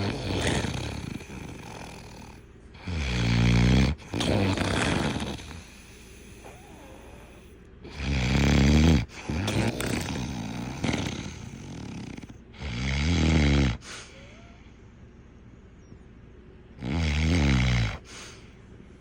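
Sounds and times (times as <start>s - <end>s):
quiet breathing: 0.0s - 8.0s, 13.7s - 16.5s, 17.8s - 19.0s
heavy snoring: 0.0s - 14.4s, 16.8s - 18.4s.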